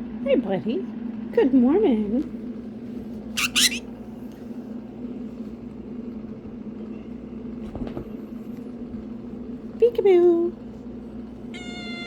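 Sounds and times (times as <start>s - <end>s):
parrot squawking: 3.4s - 3.8s.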